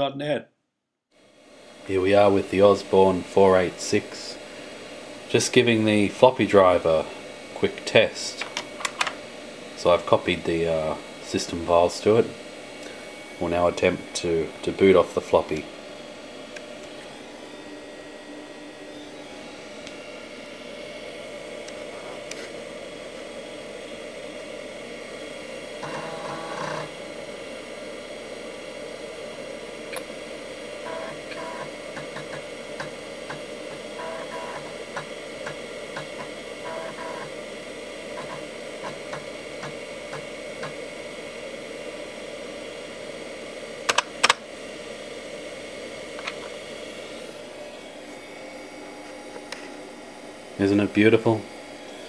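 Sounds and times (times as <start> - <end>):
computer fan hum: 1.2 - 52.0
floppy drive clicking and buzzing: 7.7 - 9.2, 25.8 - 27.0, 30.8 - 37.4, 38.1 - 40.8, 43.8 - 44.5.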